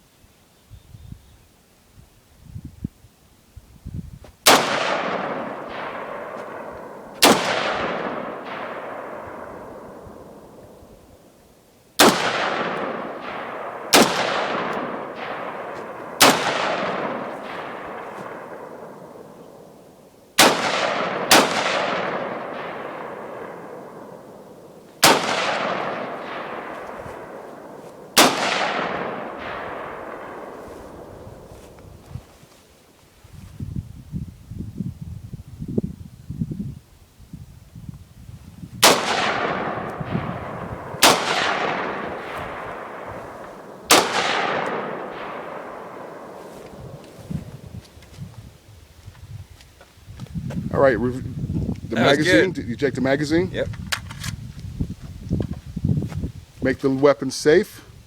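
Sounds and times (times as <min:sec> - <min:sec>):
gunshots with echo: 0:04.4 - 0:10.8, 0:12.0 - 0:31.5, 0:38.8 - 0:47.7.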